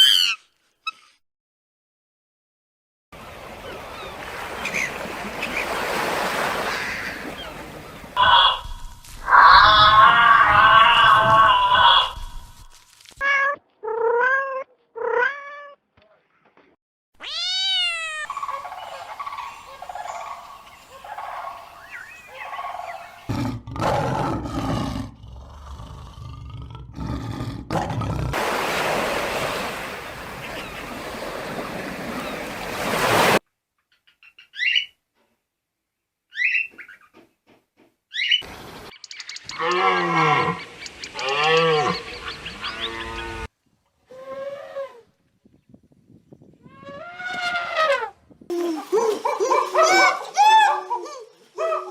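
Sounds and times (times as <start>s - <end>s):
loud roar-like animal call: 8.2s - 12.4s.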